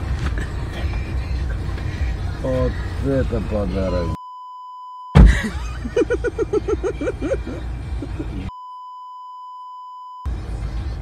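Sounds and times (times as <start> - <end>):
electronic censor bleep: 4.1 - 5.2, 8.5 - 10.3
loud sudden thump: 5.2 - 5.6
rapid rhythmic laughing: 5.2 - 8.5.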